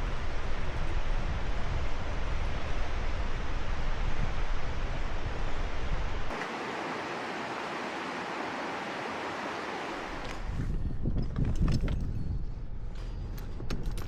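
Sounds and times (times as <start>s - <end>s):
mountain river rushing: 0.0s - 10.5s.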